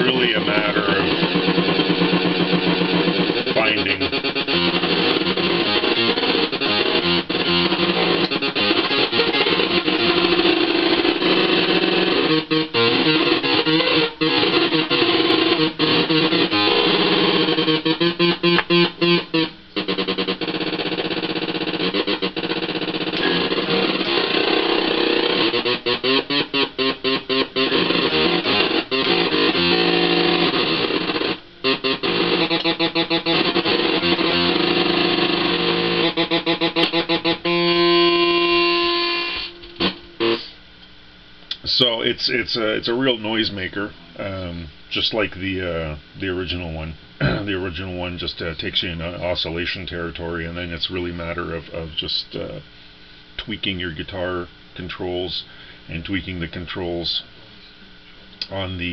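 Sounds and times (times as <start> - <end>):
oscillating fuzz electric guitar: 0.0 - 41.3.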